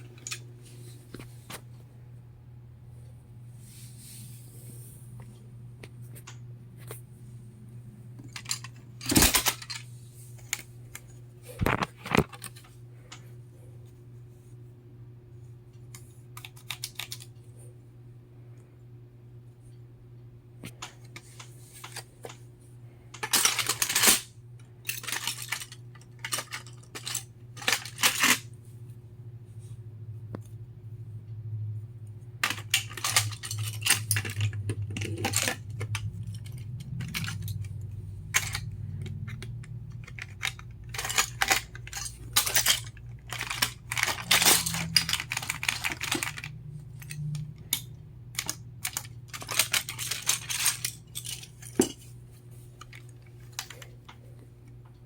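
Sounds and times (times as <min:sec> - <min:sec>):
low steady hum: 0:00.0 - 0:55.0
plastic bricks clicking and rattling: 0:23.2 - 0:24.3, 0:24.9 - 0:28.4, 0:32.4 - 0:52.0.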